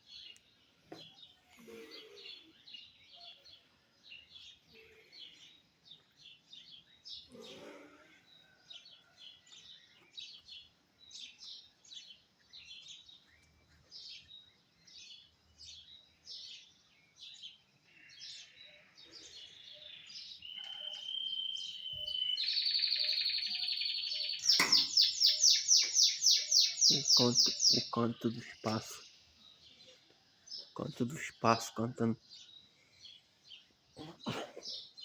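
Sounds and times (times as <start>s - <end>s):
songbird singing: 0.0s - 35.0s.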